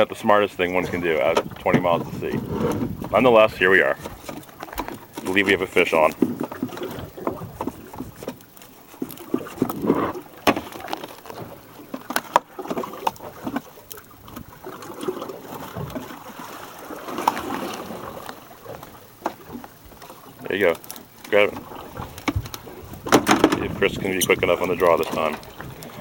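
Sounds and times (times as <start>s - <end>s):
water lapping against hull: 0.0s - 26.0s
knocks on boat: 1.2s - 3.3s, 9.6s - 12.8s, 21.5s - 24.0s.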